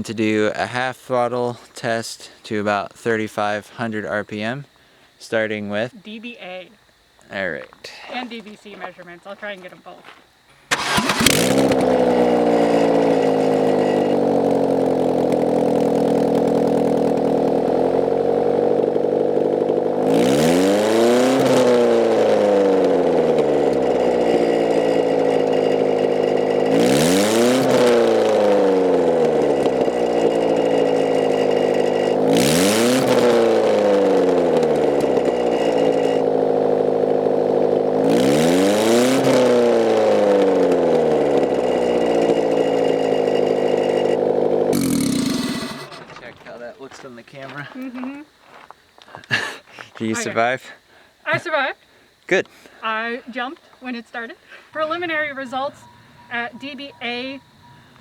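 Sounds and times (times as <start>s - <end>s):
car engine revving without exhaust: 10.7s - 46.3s, 54.8s - 58.0s.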